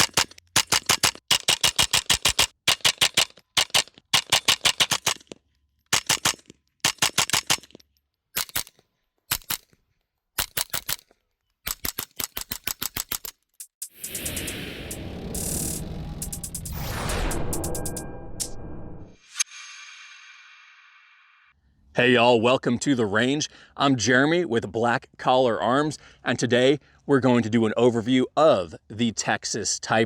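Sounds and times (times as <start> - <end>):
rifle firing rapid shots: 0.0 - 5.3, 5.9 - 7.7.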